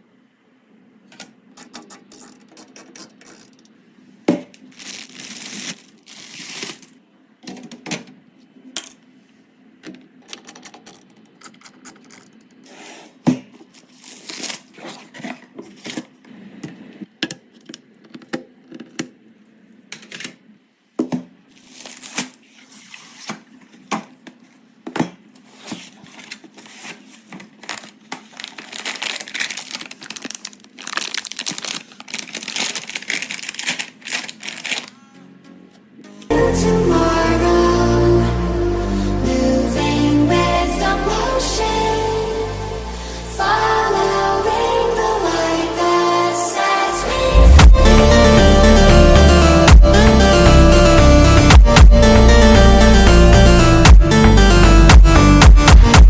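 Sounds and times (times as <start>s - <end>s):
plastic crinkling and rustling: 4.6s - 7.0s, 13.6s - 16.1s, 21.5s - 23.8s, 25.4s - 35.0s.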